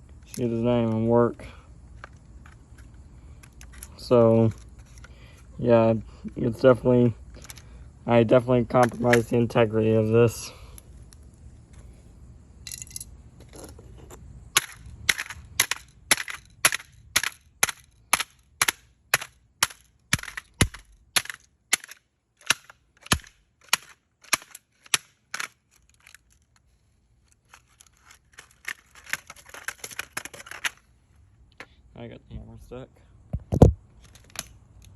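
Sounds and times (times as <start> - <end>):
small plastic cracks and rattles: 14.6 - 30.8.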